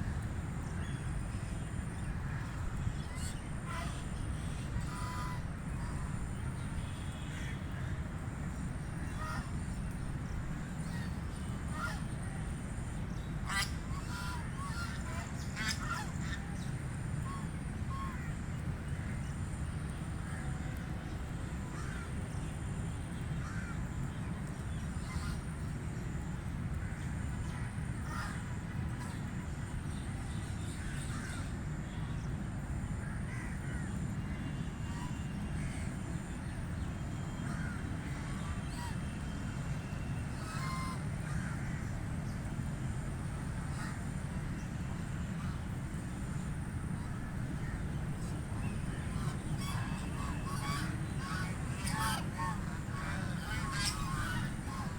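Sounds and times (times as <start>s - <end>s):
ducks quacking: 3.6s - 6.0s, 13.4s - 16.4s, 40.3s - 42.0s, 43.6s - 54.9s
steady low rumble: 37.5s - 54.9s.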